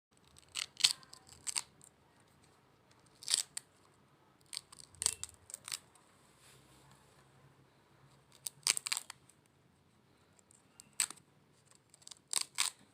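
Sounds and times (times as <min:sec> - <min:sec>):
fruit skin cracking and tearing: 0:00.2 - 0:01.9, 0:03.0 - 0:03.7, 0:04.4 - 0:05.9, 0:08.3 - 0:09.2, 0:10.8 - 0:12.8.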